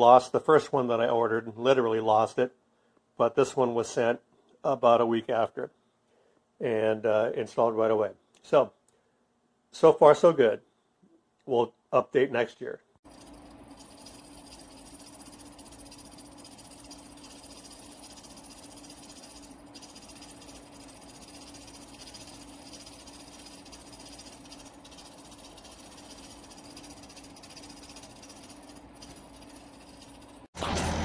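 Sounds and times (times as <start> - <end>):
air conditioner running: 13.1 - 31.0.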